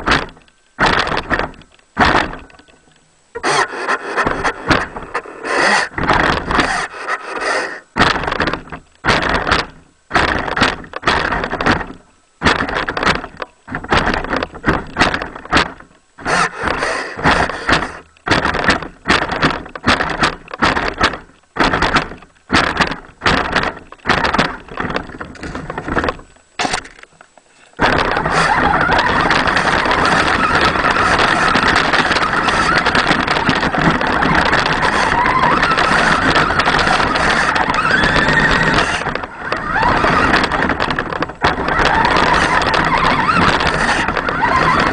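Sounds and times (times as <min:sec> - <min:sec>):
radio-controlled truck driving through snow: 0:27.8 - 0:44.9.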